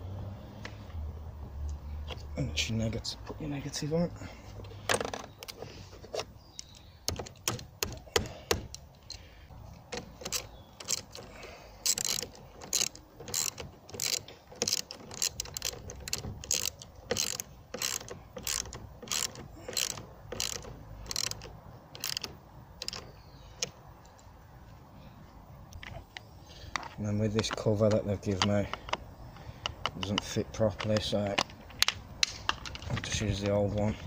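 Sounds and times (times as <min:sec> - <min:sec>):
ratchet wrench clicking: 0:10.0 - 0:23.1.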